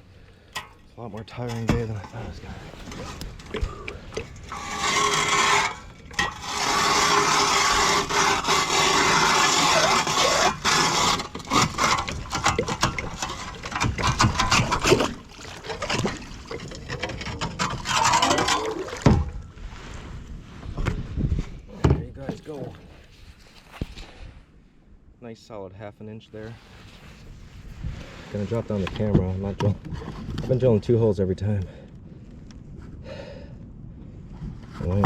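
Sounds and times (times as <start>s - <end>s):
scraping and knocking: 0.6s - 19.4s
ice auger grinding: 2.6s - 19.3s.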